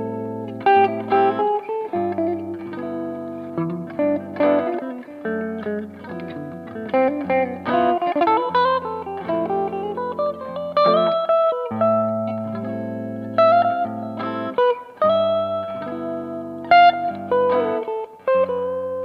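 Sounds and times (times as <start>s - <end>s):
overdriven electric guitar: 0.0s - 19.0s.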